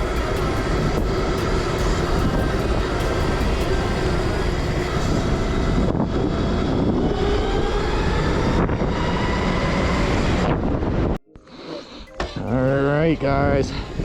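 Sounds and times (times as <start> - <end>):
wind buffeting microphone: 0.0 - 11.2.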